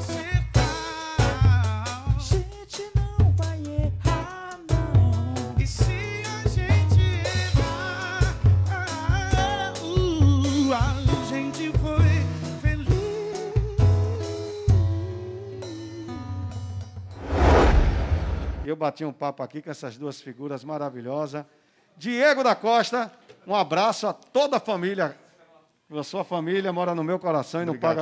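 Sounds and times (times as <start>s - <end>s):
drum kit: 0.0s - 15.0s
pop song with singing: 0.0s - 16.2s
deep bass: 17.2s - 18.7s.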